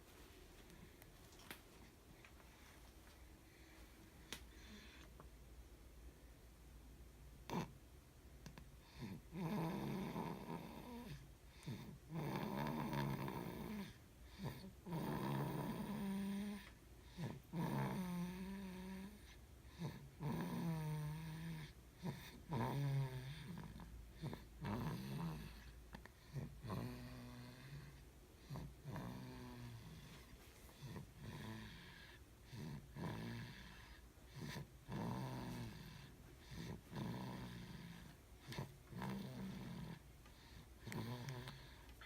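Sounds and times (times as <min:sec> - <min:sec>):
buzzing snore: 0:07.5 - 0:07.7, 0:08.8 - 0:30.2, 0:30.8 - 0:42.0.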